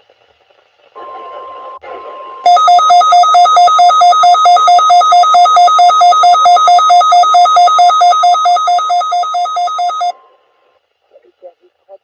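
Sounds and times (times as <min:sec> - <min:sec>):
steady alert beep: 0:02.5 - 0:10.1.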